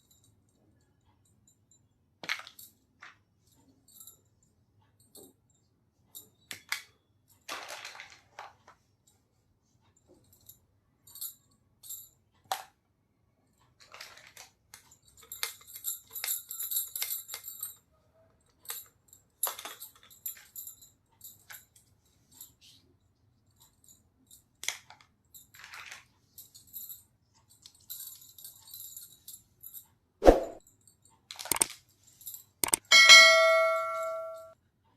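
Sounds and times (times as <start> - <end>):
plastic toy pieces clicking: 31.3 - 31.8, 32.6 - 32.9
jingling rattle: 31.5 - 34.5.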